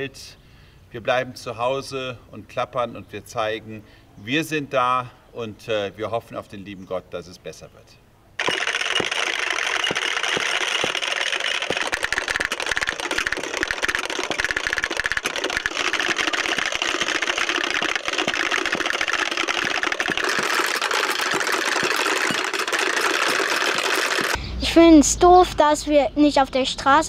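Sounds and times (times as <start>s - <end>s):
wooden clappers rattling: 8.4s - 24.4s.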